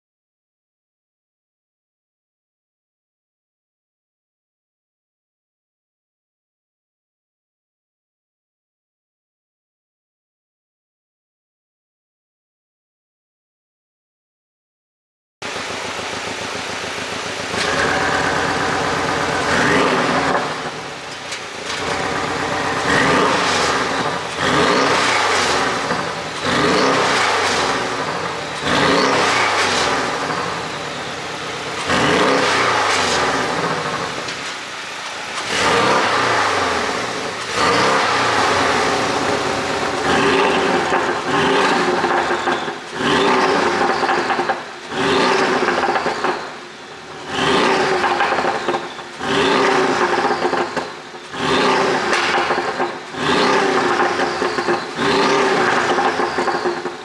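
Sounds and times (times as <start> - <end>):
car engine revving: 15.4 - 57.0
exhaust pops and crackles: 15.4 - 57.0.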